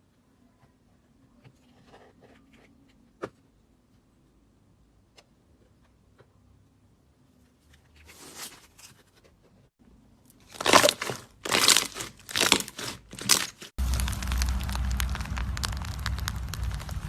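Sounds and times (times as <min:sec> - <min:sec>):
dense slime crackling: 0:10.4 - 0:17.0
slime crunchy squishes: 0:10.4 - 0:17.0.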